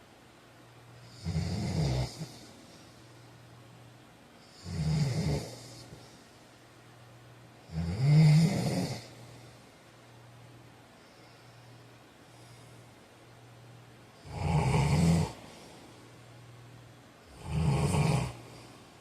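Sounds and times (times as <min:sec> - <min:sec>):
steady low hum: 0:00.0 - 0:19.0
man snoring: 0:01.0 - 0:02.6, 0:04.4 - 0:06.0, 0:07.7 - 0:09.2, 0:14.2 - 0:15.7, 0:17.3 - 0:18.7.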